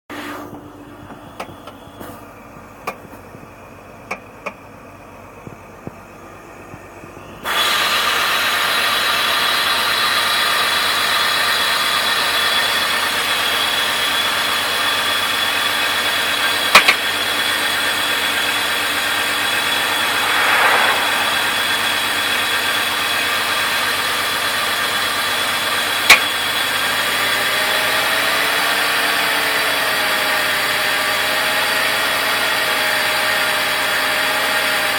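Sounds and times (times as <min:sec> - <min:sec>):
high even whine: 0:18.2 - 0:24.0.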